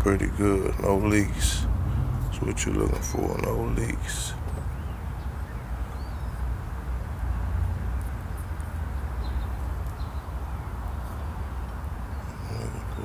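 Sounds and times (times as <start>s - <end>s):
low rumble and hiss: 0.0s - 13.0s
faint bird chirps: 12.0s - 13.0s.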